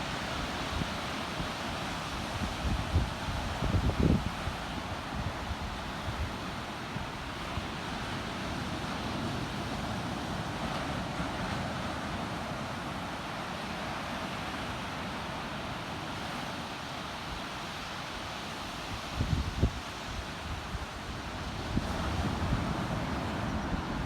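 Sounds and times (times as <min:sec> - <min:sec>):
wind on microphone: 0:00.0 - 0:06.4, 0:18.9 - 0:24.0.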